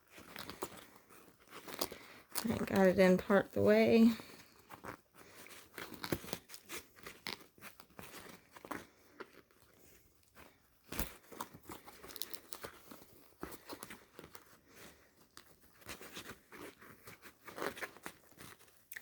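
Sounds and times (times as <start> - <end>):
fabric rustling and scraping: 0.0 - 18.9.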